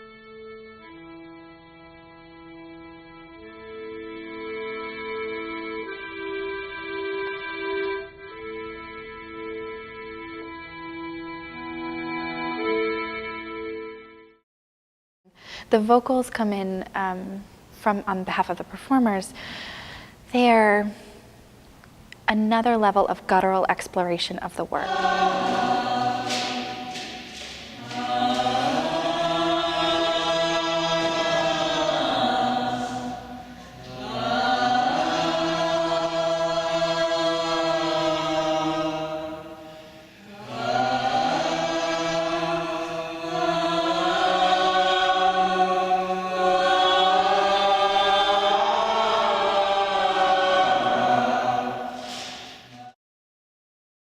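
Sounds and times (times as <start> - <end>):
women chanting held tones: 24.7 - 36.3.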